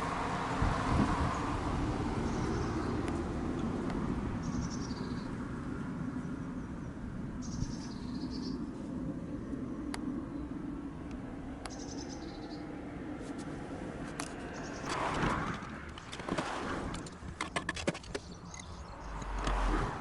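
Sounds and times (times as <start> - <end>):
small bird singing trills: 2.2 - 3.0, 4.4 - 5.4, 6.3 - 8.7, 11.7 - 12.7, 18.2 - 19.2.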